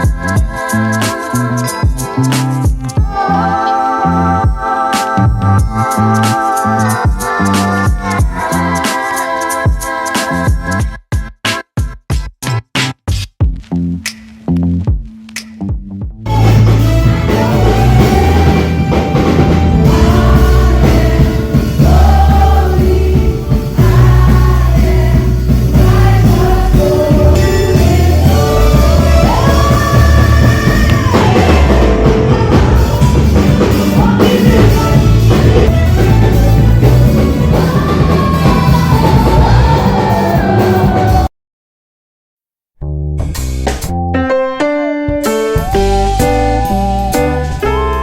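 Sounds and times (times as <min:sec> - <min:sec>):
pop song with vocals: 0:00.0 - 0:11.3, 0:16.3 - 0:41.3, 0:44.6 - 0:48.0
keyboard music: 0:14.5 - 0:41.3, 0:43.9 - 0:48.0.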